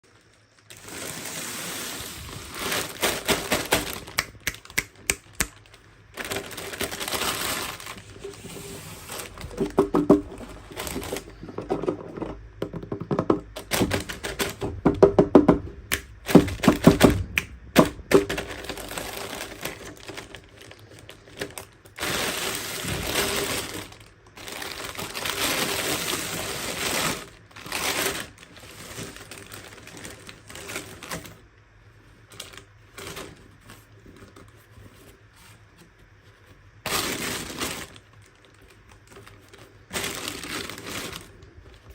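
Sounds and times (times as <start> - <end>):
wrapper crinkling: 0.0 - 12.5, 13.5 - 31.4, 32.1 - 35.4, 36.8 - 41.9
hard plastic clicks and knocks: 14.6 - 18.4.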